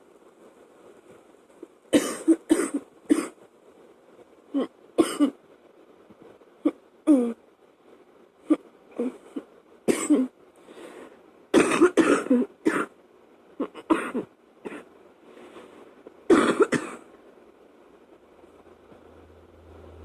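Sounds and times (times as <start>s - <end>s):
faint steady fan: 0.0s - 20.0s
woman coughing: 2.0s - 3.3s, 4.6s - 5.4s, 9.9s - 10.3s, 11.6s - 12.9s, 13.6s - 14.8s, 16.3s - 17.0s.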